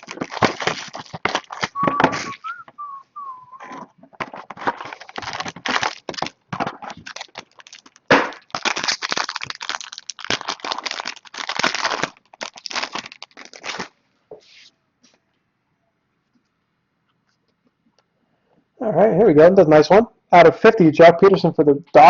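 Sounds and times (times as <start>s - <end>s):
plastic shrink wrap crinkling and tearing: 0.0s - 2.6s, 4.2s - 14.0s
sharp crack: 7.2s - 9.6s.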